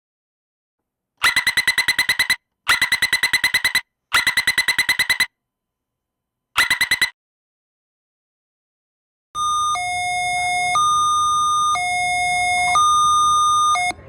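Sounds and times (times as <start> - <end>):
rapid electronic beeping: 1.2 - 5.3, 6.6 - 7.2.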